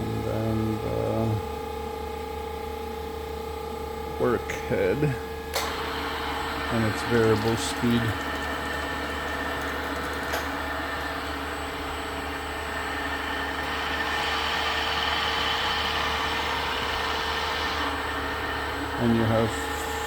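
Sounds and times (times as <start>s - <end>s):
high machine whine: 0.0s - 20.0s
grinder machine hum: 3.8s - 20.0s.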